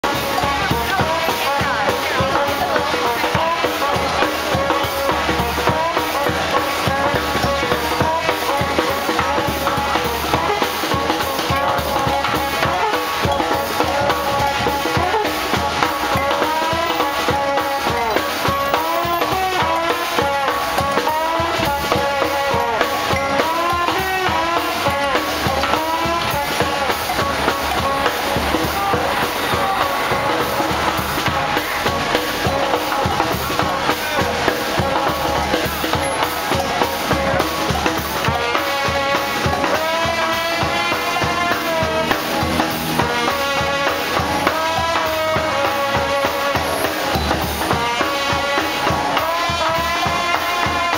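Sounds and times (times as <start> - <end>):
drum kit beat: 0.0 - 50.9
street band playing: 0.0 - 50.9.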